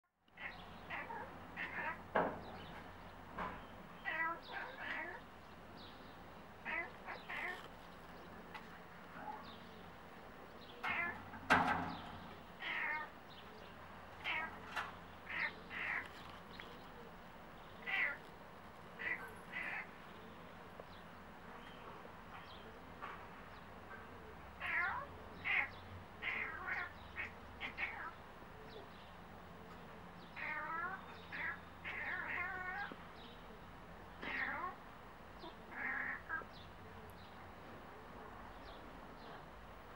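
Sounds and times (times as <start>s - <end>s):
cat meowing and chirping: 0.4s - 2.1s, 4.0s - 5.3s, 6.6s - 7.7s, 10.8s - 11.2s, 12.6s - 13.2s, 14.2s - 14.6s, 15.2s - 16.1s, 17.8s - 18.3s, 19.0s - 19.9s, 24.6s - 28.2s, 30.4s - 33.0s, 34.2s - 34.8s, 35.4s - 36.5s.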